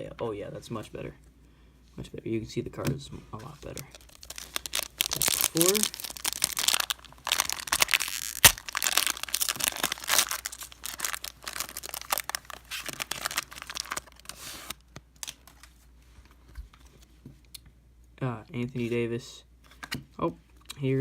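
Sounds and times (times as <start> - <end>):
foil wrapper tearing and crinkling: 3.7 - 15.7.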